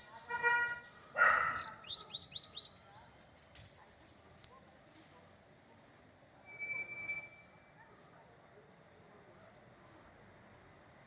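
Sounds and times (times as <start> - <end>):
bird singing high-pitched song: 0.0 - 5.3.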